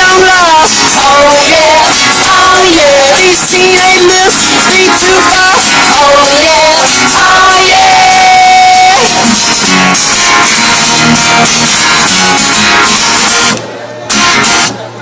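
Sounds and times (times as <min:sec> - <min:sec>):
person singing: 0:00.0 - 0:09.5
strummed acoustic guitar: 0:00.0 - 0:15.0.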